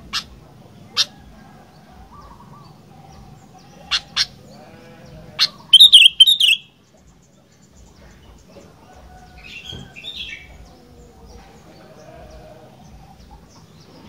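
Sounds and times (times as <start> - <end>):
bulbul calling: 0.0 - 1.2, 5.4 - 6.8.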